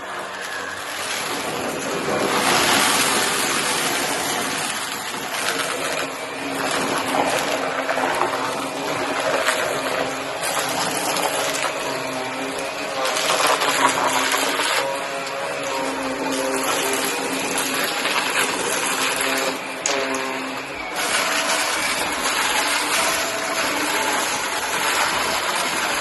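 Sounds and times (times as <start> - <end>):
vacuum suction rushing: 0.0 - 14.8
vacuum cleaner motor hum: 0.0 - 26.0.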